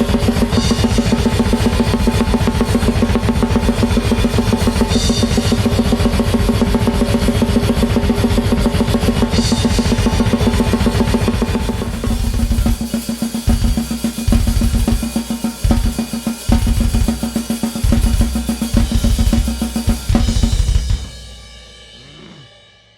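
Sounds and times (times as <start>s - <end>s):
drum kit blast beats: 0.0s - 22.4s
cymbals ringing: 0.1s - 6.5s.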